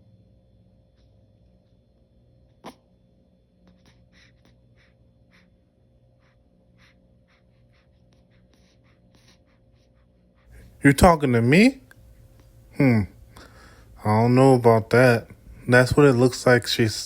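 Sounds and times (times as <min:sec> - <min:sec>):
baby breathing faintly: 0:03.6 - 0:10.9, 0:11.9 - 0:14.3.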